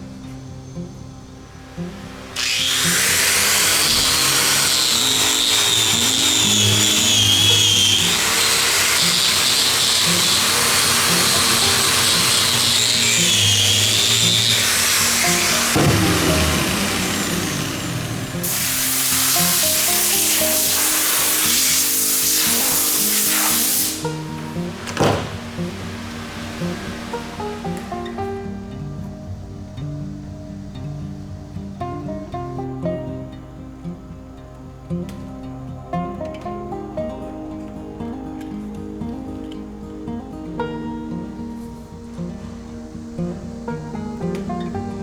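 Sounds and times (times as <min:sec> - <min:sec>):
power tool whining: 0:00.0 - 0:31.8
background music: 0:00.0 - 0:45.0
loud steady hiss: 0:00.0 - 0:45.0.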